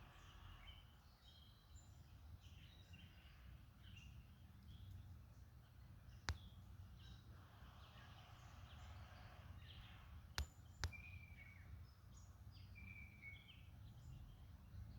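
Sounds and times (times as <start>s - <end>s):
faint songbird chirps: 0.0s - 14.9s
woodpecker tapping wood: 6.2s - 6.6s, 10.3s - 11.2s.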